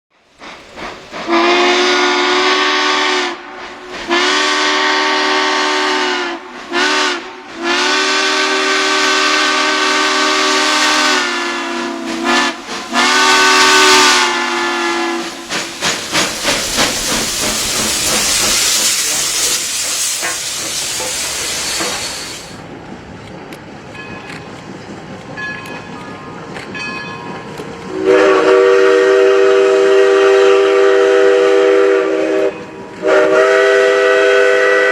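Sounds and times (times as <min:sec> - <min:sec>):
steam hissing with chuffing: 0:00.1 - 0:22.7, 0:27.6 - 0:34.9
steam locomotive whistle: 0:01.2 - 0:22.6, 0:27.9 - 0:34.9
loud horn blast: 0:01.3 - 0:03.5, 0:04.1 - 0:15.3, 0:27.9 - 0:34.9.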